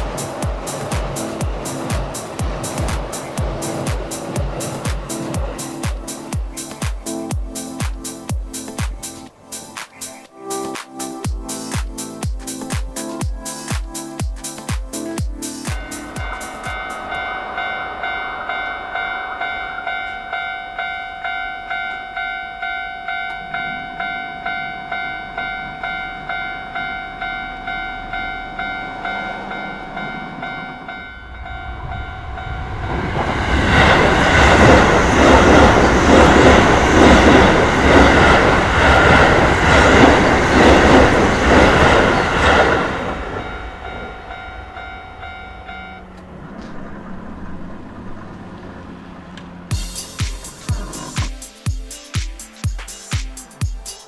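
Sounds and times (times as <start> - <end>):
level-crossing warning bell ringing: 0.0 - 7.7, 15.6 - 50.9
train wheels clattering: 0.0 - 10.2, 11.2 - 18.6, 31.3 - 47.6
electric train rushing past: 0.0 - 52.7.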